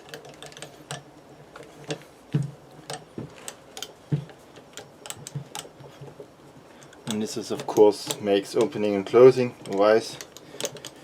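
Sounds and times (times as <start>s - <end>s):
vise crank handle clicking: 6.8s - 11.0s.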